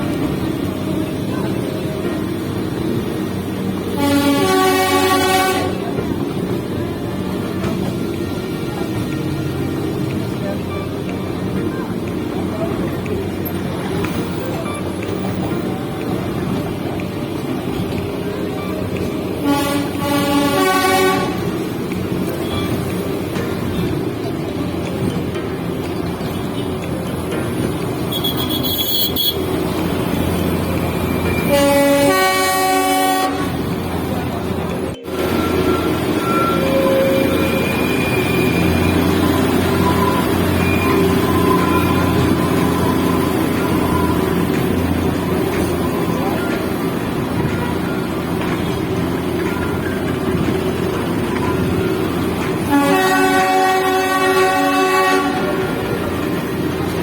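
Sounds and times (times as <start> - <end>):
train running rumble: 0.0 - 57.0
train horn: 3.9 - 6.0, 19.4 - 21.7, 28.1 - 29.6, 31.3 - 33.9, 52.6 - 56.0.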